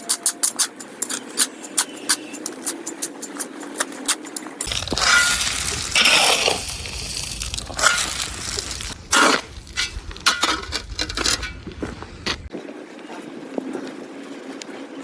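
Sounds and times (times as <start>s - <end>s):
low rumble: 4.7s - 12.5s.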